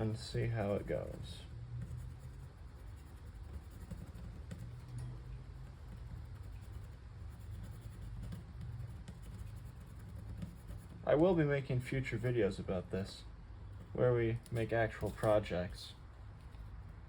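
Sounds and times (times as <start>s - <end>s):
pencil scratching on wood: 0.0s - 11.1s.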